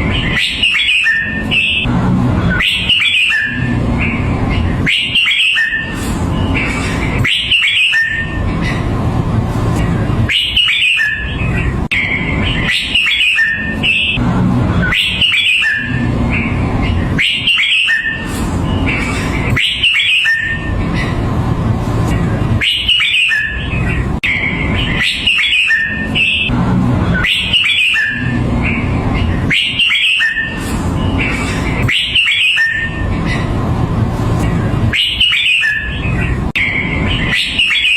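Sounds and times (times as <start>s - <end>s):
bird singing whistled phrases: 0.2s - 1.9s, 2.5s - 6.6s, 7.2s - 8.4s, 10.3s - 14.2s, 14.8s - 18.9s, 19.6s - 20.7s, 22.6s - 26.5s, 27.2s - 31.2s, 31.9s - 33.0s, 34.9s - 37.9s
steady low rumble: 1.8s - 4.9s, 5.8s - 7.2s, 8.1s - 10.6s, 11.2s - 12.7s, 13.8s - 17.5s, 18.2s - 19.6s, 20.5s - 22.9s, 23.5s - 25.0s, 26.1s - 29.5s, 30.5s - 31.9s, 32.8s - 35.2s.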